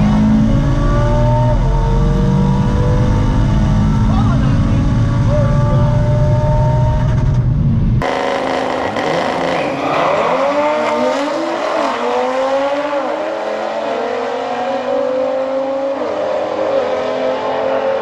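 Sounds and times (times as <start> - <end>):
car engine at full throttle: 0.0 - 18.0.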